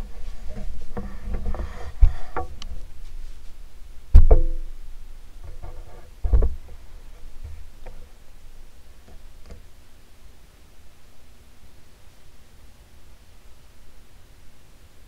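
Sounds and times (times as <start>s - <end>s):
sharp knocks and clicks: 4.1s - 4.7s.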